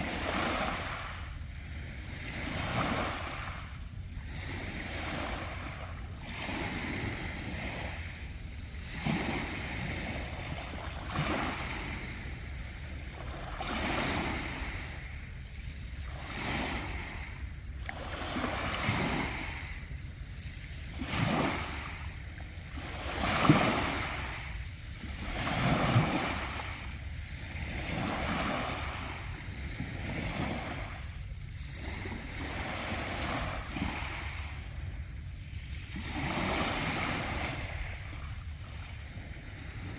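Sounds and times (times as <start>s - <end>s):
waves breaking on pebble beach: 2.1s - 3.7s, 13.2s - 15.0s, 16.1s - 17.3s, 18.0s - 19.7s, 20.9s - 22.1s, 22.8s - 26.9s.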